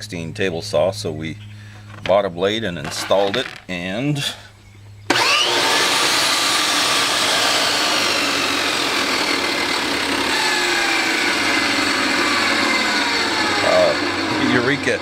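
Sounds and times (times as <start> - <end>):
table saw whining: 5.1 - 15.0.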